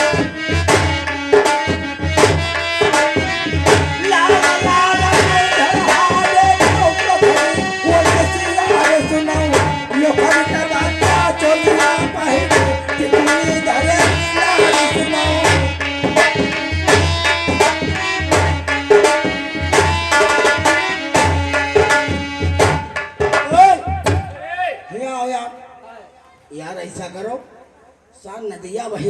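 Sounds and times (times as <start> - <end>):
hand drum rhythm: 0.0 - 24.4.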